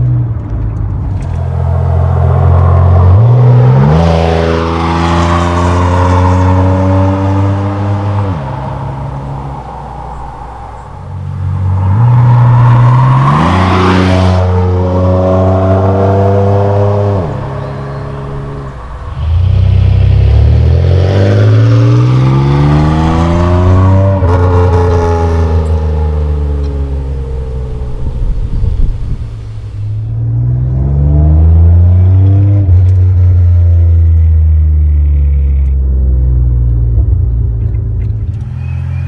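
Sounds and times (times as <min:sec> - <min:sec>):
car engine accelerating hard: 0:00.8 - 0:37.4.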